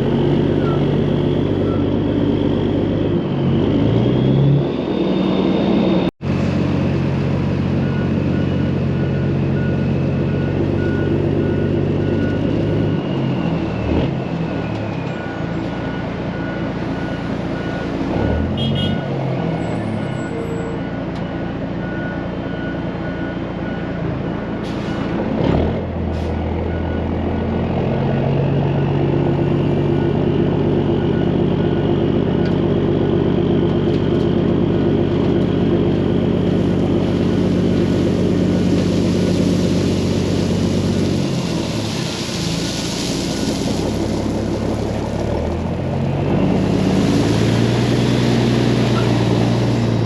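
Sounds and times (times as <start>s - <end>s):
reversing alarm beeping: 7.7s - 25.1s
truck diesel engine running: 25.9s - 50.0s.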